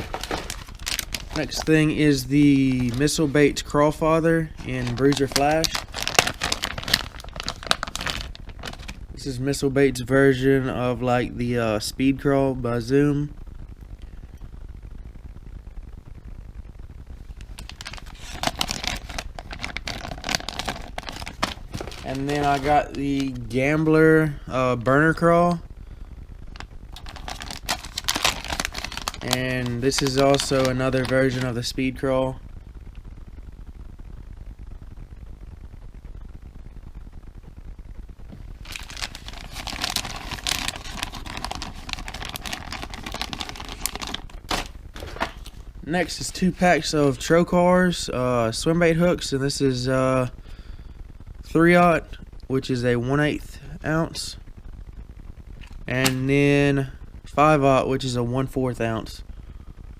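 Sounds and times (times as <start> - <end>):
plastic packaging crinkling: 0.0 - 9.0, 17.4 - 23.8, 26.6 - 31.8, 38.6 - 46.4.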